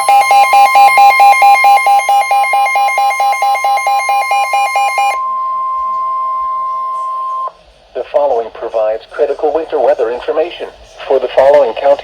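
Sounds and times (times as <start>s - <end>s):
rapid electronic alarm beeps: 0.0s - 7.5s
steady high tone: 0.0s - 7.6s.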